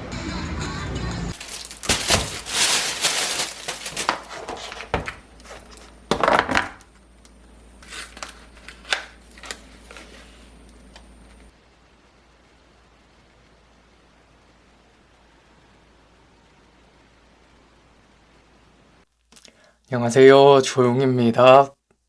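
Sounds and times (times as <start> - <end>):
food packaging crinkling: 1.3 - 11.5.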